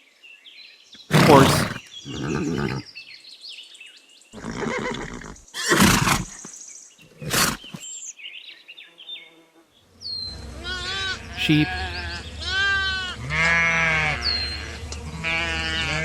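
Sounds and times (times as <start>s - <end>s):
birds chirping faintly: 0.2s - 13.2s
horse neighing: 1.0s - 2.8s, 4.4s - 6.5s, 7.1s - 7.8s.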